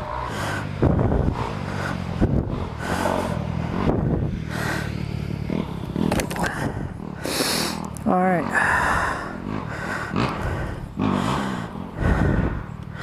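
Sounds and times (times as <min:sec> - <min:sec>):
dirt bike engine running: 0:00.0 - 0:13.0
person breathing hard: 0:00.1 - 0:00.8, 0:01.5 - 0:03.8, 0:04.4 - 0:05.1, 0:06.4 - 0:07.9, 0:08.5 - 0:13.0.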